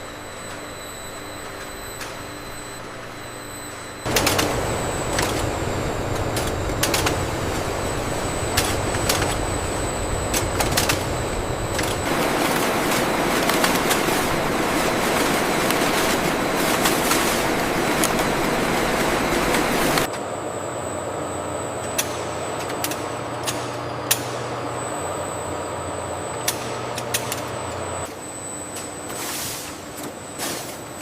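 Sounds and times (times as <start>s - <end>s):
factory machinery running: 0.0s - 31.0s
scattered machine clacks: 4.1s - 20.1s.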